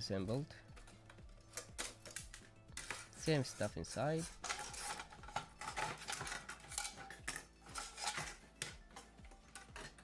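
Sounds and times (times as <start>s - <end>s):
metal and plastic parts clinking: 4.2s - 10.0s.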